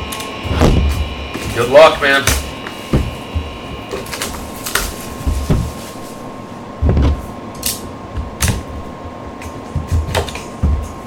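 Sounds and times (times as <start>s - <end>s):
cardboard and wrapper rustling: 3.9s - 6.3s.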